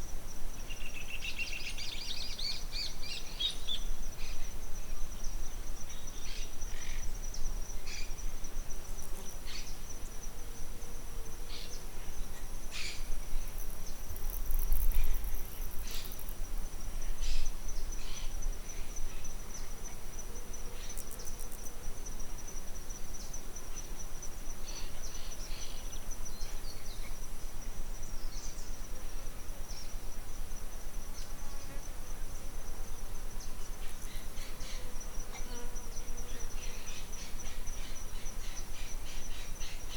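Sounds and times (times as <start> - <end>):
insect trilling: 12.7 - 16.4.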